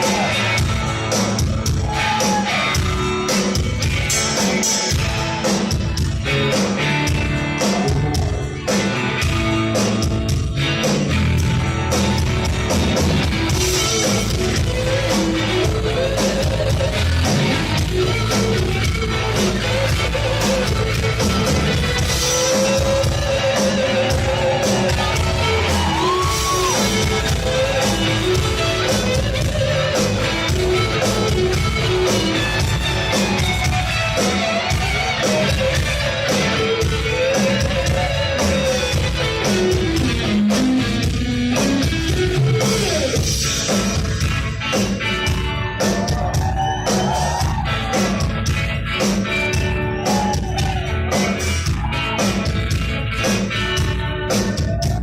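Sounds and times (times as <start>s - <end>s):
shouted vocals: 0.0s - 0.6s, 1.8s - 2.9s, 22.3s - 30.5s, 45.2s - 48.3s, 49.6s - 52.4s
live rock band playing: 0.0s - 55.0s.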